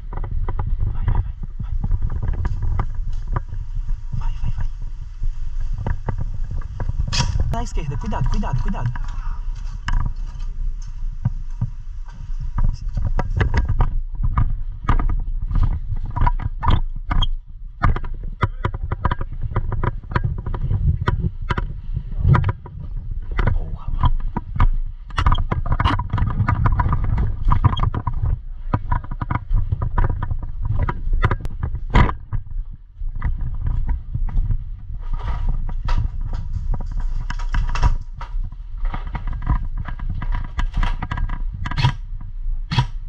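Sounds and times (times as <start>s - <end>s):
low handling rumble: 0.0s - 17.8s.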